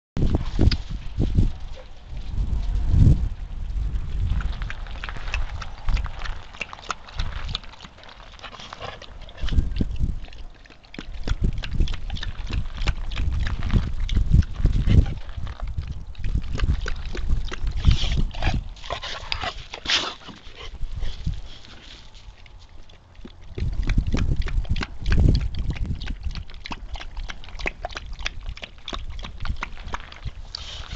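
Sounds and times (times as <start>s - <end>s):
clicks and low thumps: 11.0s - 18.7s, 23.5s - 26.8s.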